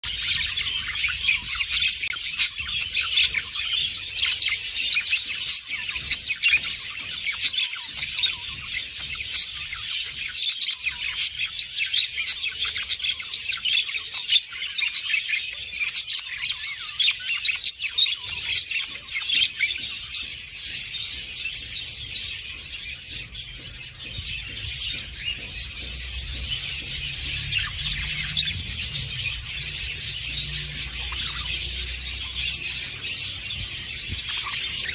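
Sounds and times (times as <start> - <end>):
budgerigars chattering and chirping: 0.0 - 34.9.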